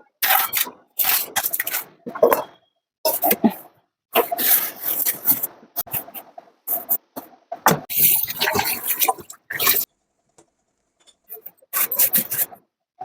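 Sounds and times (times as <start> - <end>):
tap water splashing onto utensils: 7.9 - 9.8
utensils clattering: 7.9 - 9.8.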